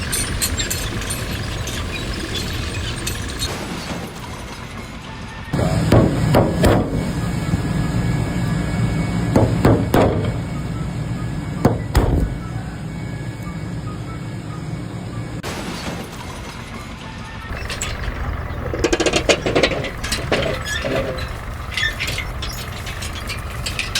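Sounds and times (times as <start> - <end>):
low machine rumble: 0.0 - 3.5, 5.6 - 15.4, 17.5 - 23.9
sharp knocks and impacts: 11.7 - 12.5.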